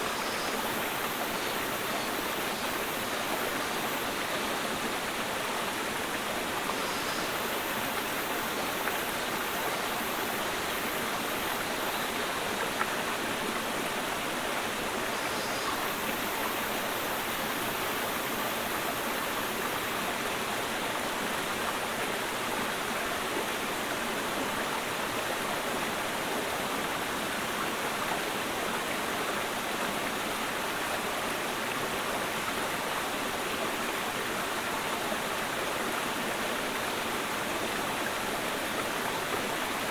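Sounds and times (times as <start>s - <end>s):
stream rushing over rocks: 0.0s - 39.9s.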